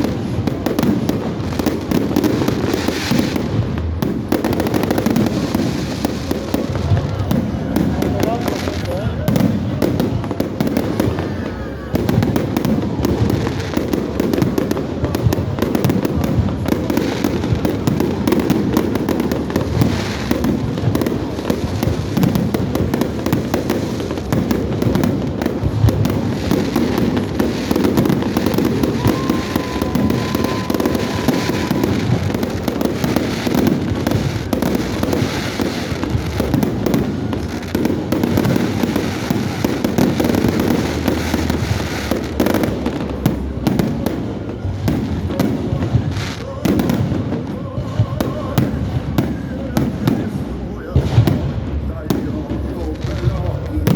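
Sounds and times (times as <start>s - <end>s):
fireworks bursting and crackling: 0.0s - 53.9s.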